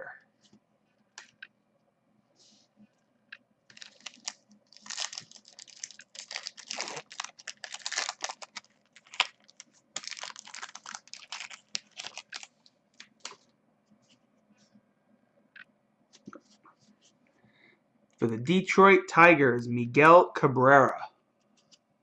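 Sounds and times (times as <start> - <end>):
cards and foil wrapper crinkling: 3.7 - 13.5.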